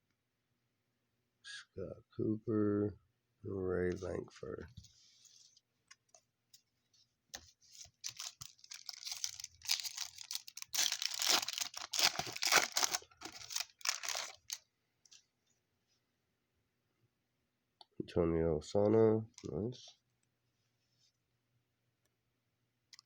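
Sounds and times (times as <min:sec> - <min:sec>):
wrapper being torn and crinkled: 0:07.8 - 0:14.6.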